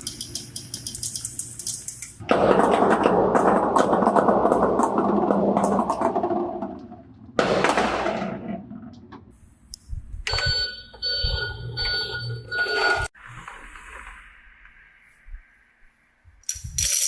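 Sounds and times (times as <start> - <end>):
electronic bell-like ringing tone: 10.3 - 13.1.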